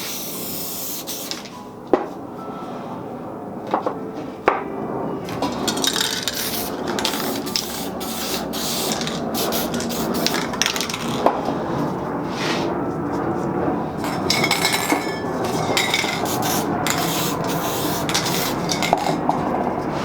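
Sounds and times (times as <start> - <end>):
spray paint can hissing: 0.0 - 1.5, 5.6 - 11.4, 14.0 - 19.4.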